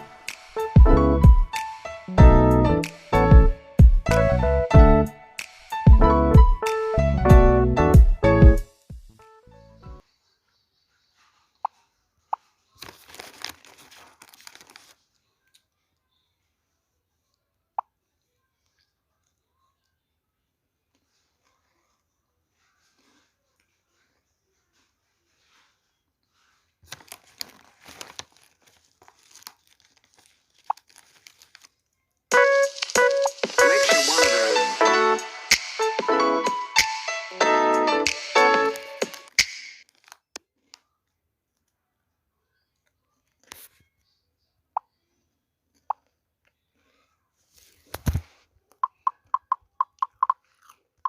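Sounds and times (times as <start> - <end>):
music with pitched notes: 0.0 - 10.0, 32.3 - 39.3
crinkling and rustling clicks: 12.8 - 15.7, 26.8 - 32.0, 39.8 - 40.9.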